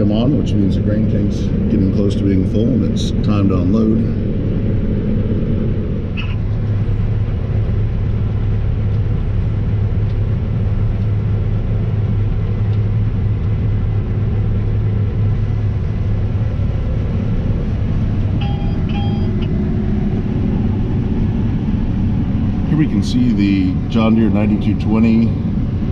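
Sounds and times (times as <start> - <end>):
combine harvester humming: 0.0 - 25.9
short electronic beeps: 18.4 - 19.5.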